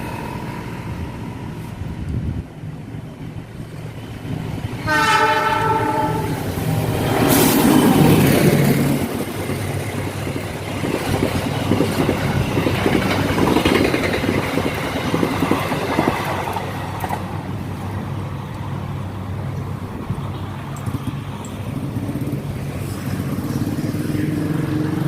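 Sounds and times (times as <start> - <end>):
diesel locomotive horn: 4.8 - 6.5.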